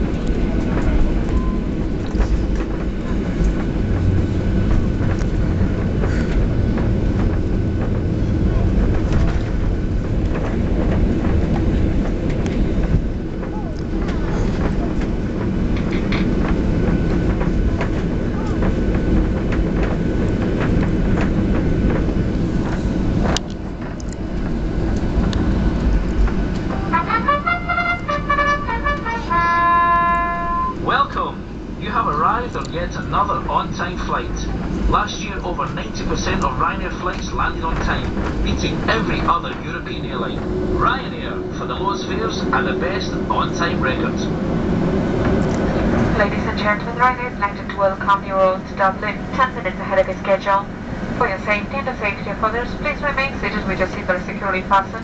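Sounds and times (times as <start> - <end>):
rattles and clicks: 0.0 - 27.0, 34.6 - 46.2
airplane cabin rumble: 0.0 - 55.0
wheels knocking on runway: 0.1 - 28.4.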